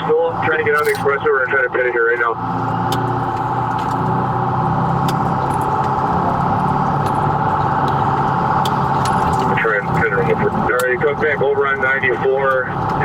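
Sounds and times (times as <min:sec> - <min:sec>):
car engine running hard: 0:00.0 - 0:13.0.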